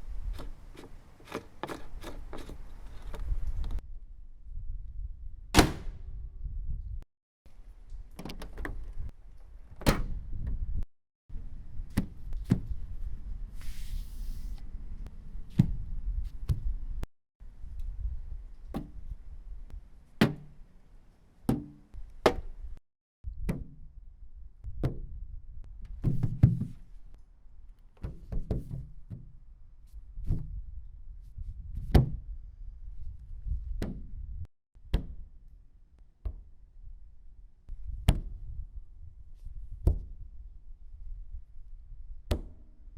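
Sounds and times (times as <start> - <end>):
knocks on a car body: 21.5 - 22.4.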